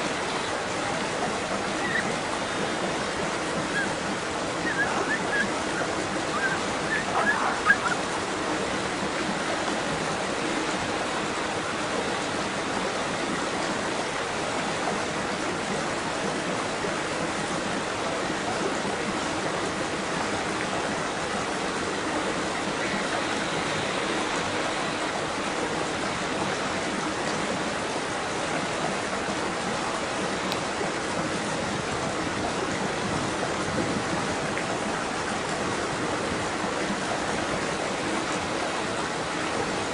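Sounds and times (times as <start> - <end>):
running water: 0.0 - 39.9
bird chirps: 4.6 - 8.0.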